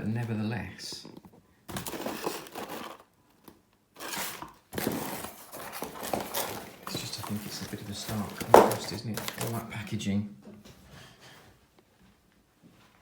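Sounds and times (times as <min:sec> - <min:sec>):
packaging crinkling: 0:01.7 - 0:09.7.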